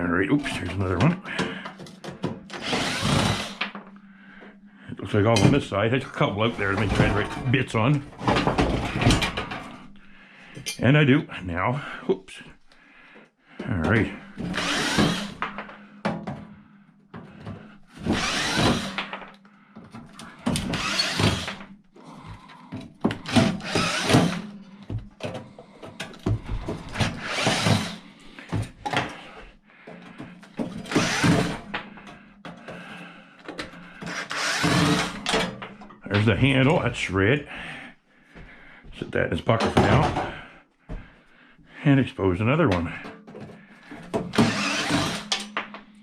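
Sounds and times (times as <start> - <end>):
power drill driving screws: 2.5 - 3.8, 14.4 - 15.6, 18.0 - 19.3, 20.5 - 21.7, 23.1 - 24.6, 26.9 - 28.0, 30.7 - 31.8, 34.0 - 35.6, 44.3 - 45.6.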